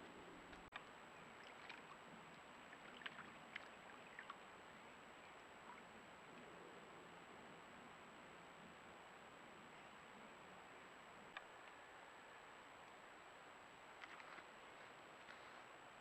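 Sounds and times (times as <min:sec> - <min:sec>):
small clicks and ticks: 0:14.0 - 0:14.5.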